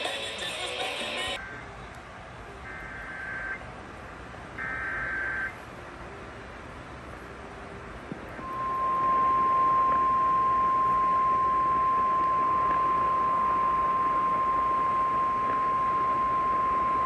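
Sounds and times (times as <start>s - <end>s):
steady alarm tone: 4.6s - 5.5s, 8.4s - 17.0s
radio static: 4.6s - 6.3s, 8.0s - 17.0s.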